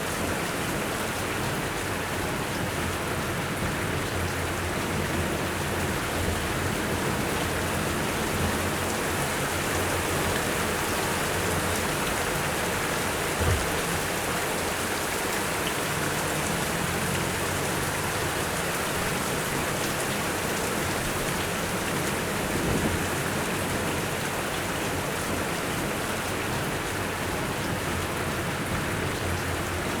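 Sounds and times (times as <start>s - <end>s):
gentle rain falling: 0.0s - 30.0s
low thuds: 13.4s - 14.0s.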